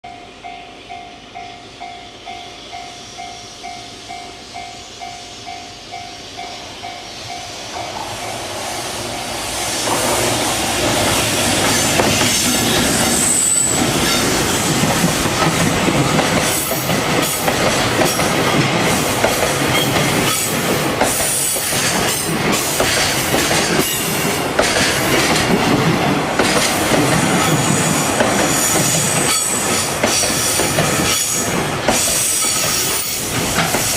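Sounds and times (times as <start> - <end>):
freight train passing: 0.0 - 33.9
high wheel squeal: 2.1 - 15.2, 26.9 - 33.9
wheels clicking over rail joints: 13.7 - 33.9.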